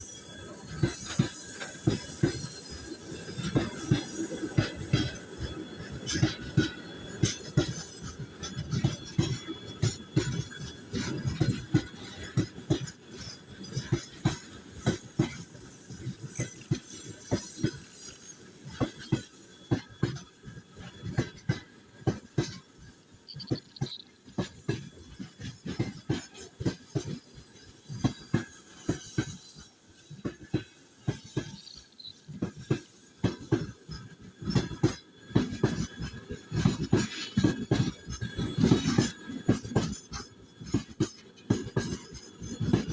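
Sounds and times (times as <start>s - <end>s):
train rolling rumble: 0.0s - 15.5s
train wheels clacking: 0.0s - 17.9s, 32.4s - 42.9s.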